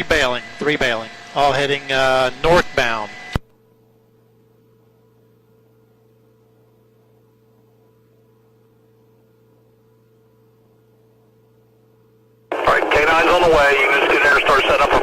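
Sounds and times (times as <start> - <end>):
radio transmission: 0.0 - 3.4, 12.5 - 15.0
faint electrical hum: 3.4 - 15.0.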